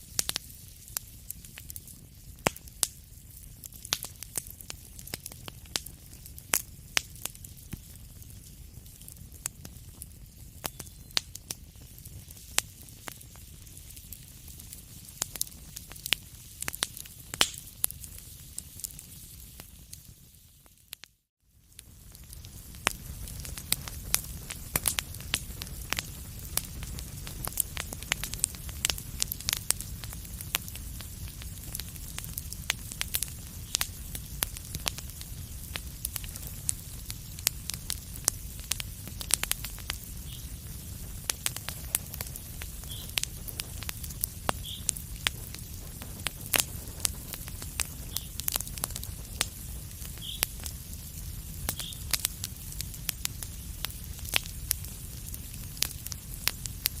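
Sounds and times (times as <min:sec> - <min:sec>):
fireplace fire crackling: 0:00.0 - 0:57.0.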